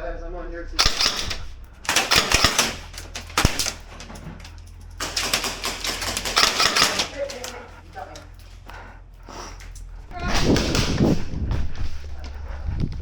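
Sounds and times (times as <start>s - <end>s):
airsoft guns firing in bursts: 0.8s - 4.1s, 5.0s - 7.7s.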